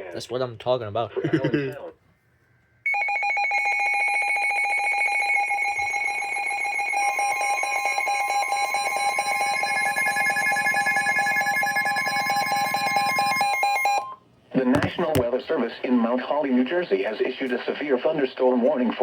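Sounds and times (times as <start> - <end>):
pulsing electronic alarm tone: 2.9 - 14.2.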